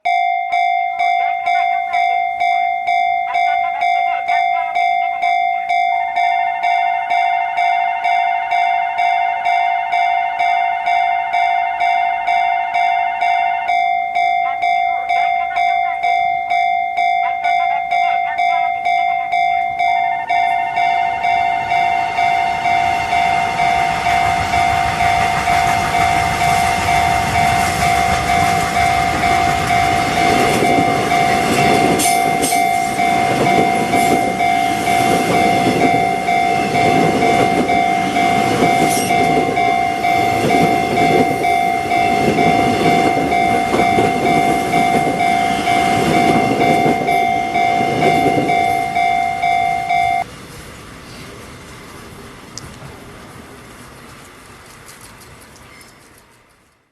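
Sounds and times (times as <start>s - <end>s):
level crossing warning bell: 0.0s - 50.3s
train rumble and wheel clatter: 0.0s - 56.8s.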